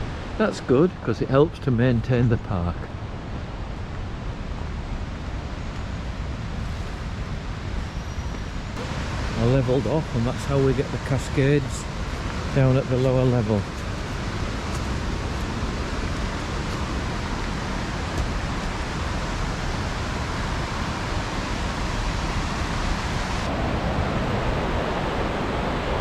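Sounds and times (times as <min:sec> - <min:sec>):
waterfall roaring: 0:06.3 - 0:26.0.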